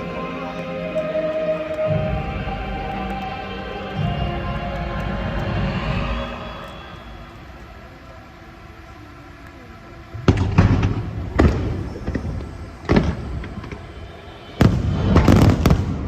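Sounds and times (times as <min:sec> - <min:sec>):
fireworks booming: 0:10.1 - 0:16.0.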